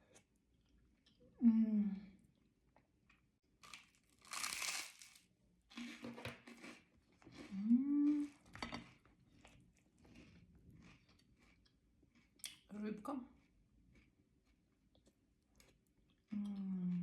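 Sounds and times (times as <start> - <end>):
person humming mmm: 7.5 - 8.3.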